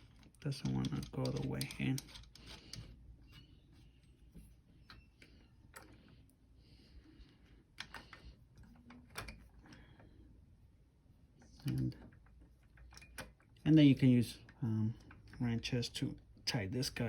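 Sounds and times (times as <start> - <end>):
faint metal clicks and taps: 0.0 - 3.5.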